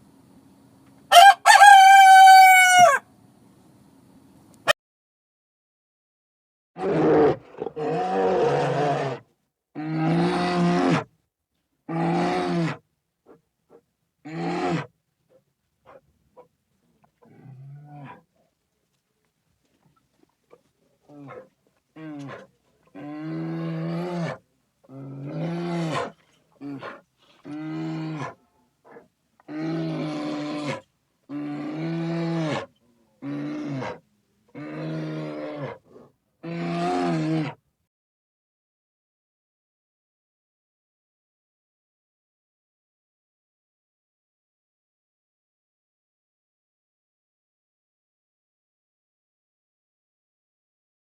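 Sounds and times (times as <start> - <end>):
big cat roaring: 6.8 - 9.2, 11.9 - 12.8, 21.1 - 37.6.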